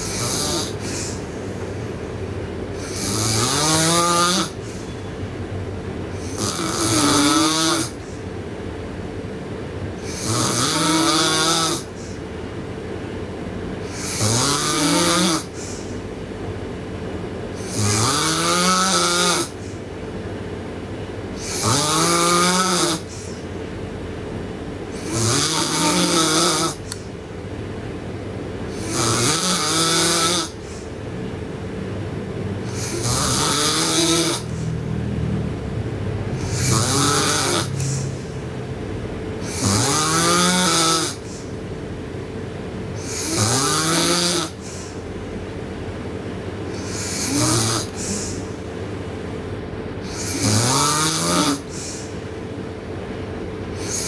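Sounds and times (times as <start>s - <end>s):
girl snoring loudly: 0.0s - 1.3s, 2.8s - 4.6s, 6.2s - 8.0s, 10.0s - 12.0s, 13.9s - 15.6s, 17.6s - 19.6s, 21.4s - 23.1s, 25.0s - 26.9s, 28.7s - 30.6s, 32.7s - 41.3s, 43.0s - 44.6s, 46.7s - 48.3s, 50.0s - 51.8s, 53.8s - 54.0s
faint steady hum: 0.0s - 54.0s.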